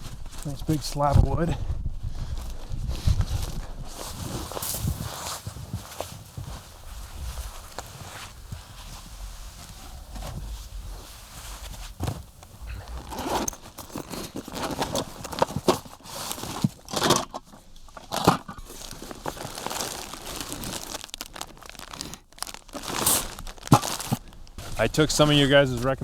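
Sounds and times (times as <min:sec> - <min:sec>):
nylon bag rustling and crinkling: 0:03.3 - 0:14.1, 0:18.8 - 0:24.3.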